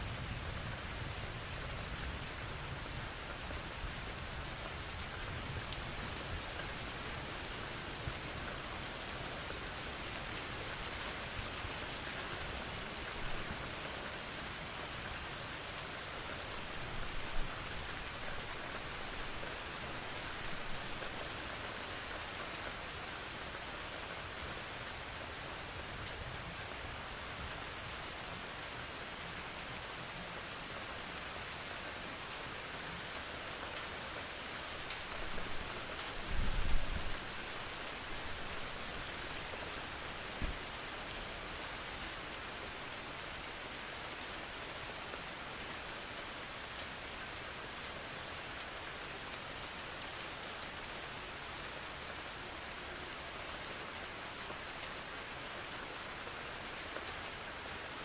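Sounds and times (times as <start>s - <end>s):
heavy rain: 0.0s - 58.0s
rain spatters: 0.0s - 58.0s.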